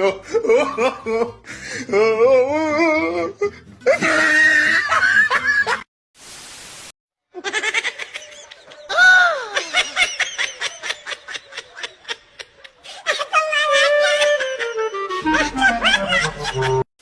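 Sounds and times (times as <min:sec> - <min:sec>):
people shrieking and laughing: 0:03.8 - 0:05.8, 0:07.4 - 0:16.8
short flat hiss: 0:06.2 - 0:06.9.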